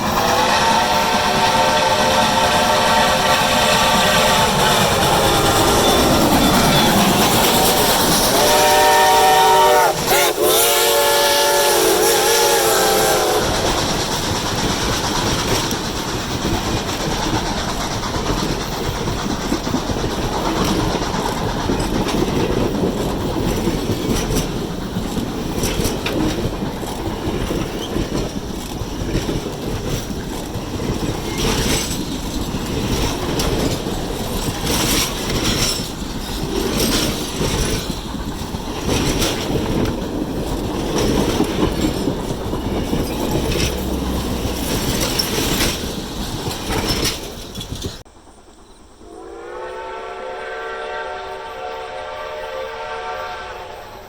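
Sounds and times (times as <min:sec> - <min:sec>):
steam locomotive whistle: 0:00.0 - 0:14.0, 0:49.0 - 0:54.0
train wheels rumbling: 0:00.0 - 0:54.0
wheels clicking over rail joints: 0:12.8 - 0:49.0.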